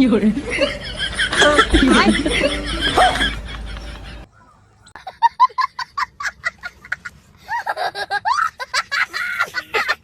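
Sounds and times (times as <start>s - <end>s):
voices or laughter: 0.3s - 10.0s.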